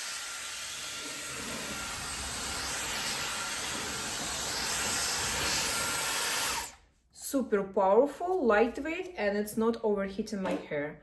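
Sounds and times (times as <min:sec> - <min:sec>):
hair dryer air rush: 0:00.0 - 0:06.8.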